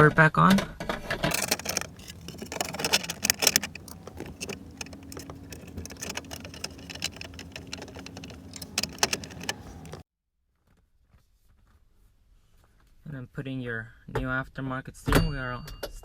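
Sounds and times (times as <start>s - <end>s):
clicks and knocks of parts handled: 1.2s - 10.0s.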